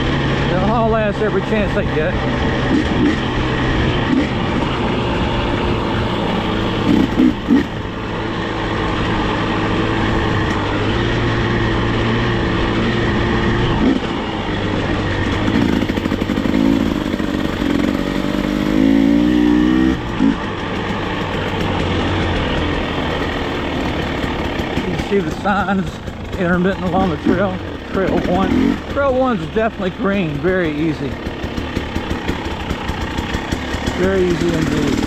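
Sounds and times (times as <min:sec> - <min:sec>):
off-road vehicle engine: 0:00.0 - 0:35.0.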